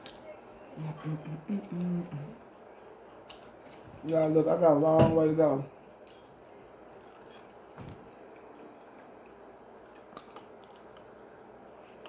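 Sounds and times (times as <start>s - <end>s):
person chewing food: 5.8s - 12.0s.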